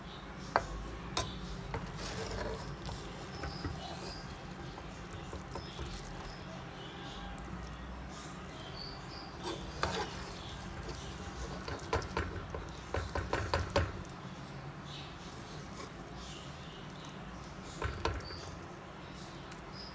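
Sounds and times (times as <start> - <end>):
kitchen utensils and dishes clicking: 0.5 - 6.4, 9.4 - 14.1.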